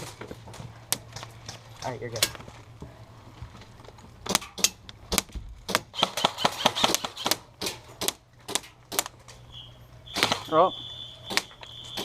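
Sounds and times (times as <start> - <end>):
airsoft gun shots: 4.3 - 9.1, 10.1 - 10.6, 11.2 - 12.0.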